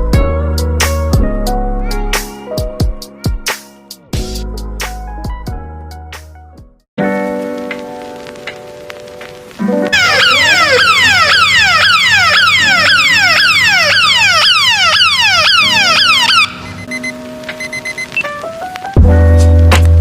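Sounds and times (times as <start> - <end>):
megaphone siren wailing: 9.9 - 16.8.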